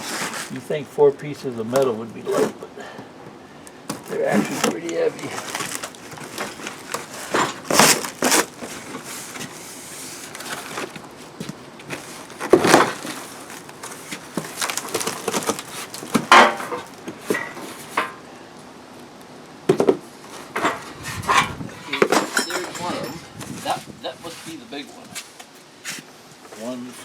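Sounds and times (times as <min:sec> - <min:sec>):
cardboard being torn: 0:00.0 - 0:00.6, 0:03.9 - 0:11.0, 0:12.0 - 0:17.4.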